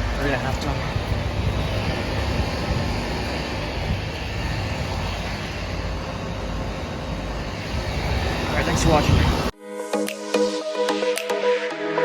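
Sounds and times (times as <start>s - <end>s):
air conditioning units humming: 0.0s - 9.5s.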